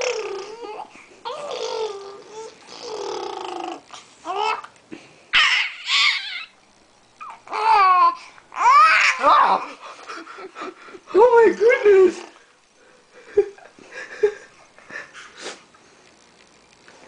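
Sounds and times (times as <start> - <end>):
baby babbling and cooing: 0.0 - 4.7, 7.2 - 9.7.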